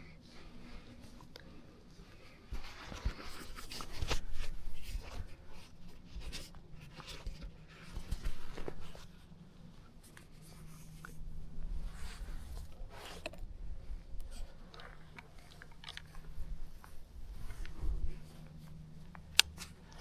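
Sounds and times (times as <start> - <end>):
clothing rubbing on camera: 2.5 - 13.3.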